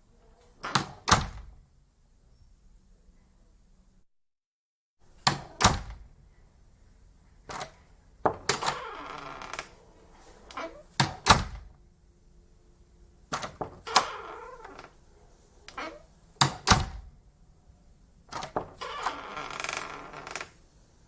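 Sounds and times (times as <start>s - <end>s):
door hinges creaking: 7.5s - 11.7s, 13.3s - 15.0s, 15.7s - 17.1s, 18.3s - 20.6s
heavy door thuds: 10.5s - 11.8s, 15.8s - 17.1s.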